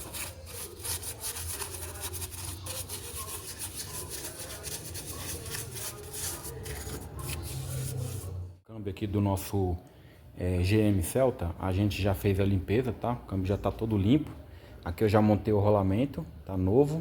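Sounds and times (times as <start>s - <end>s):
scrubbing metal casing: 0.0s - 8.4s.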